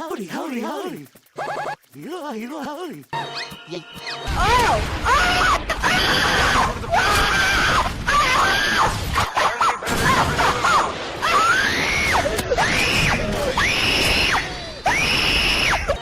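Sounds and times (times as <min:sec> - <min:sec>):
cartoon voice screaming: 0:04.2 - 0:16.0.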